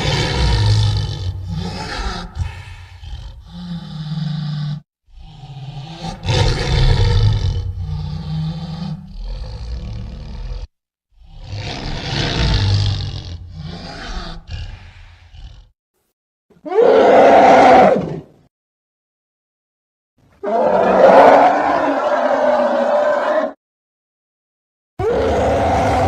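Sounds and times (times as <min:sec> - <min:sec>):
monster roars: 0:00.0 - 0:15.7, 0:25.0 - 0:26.0.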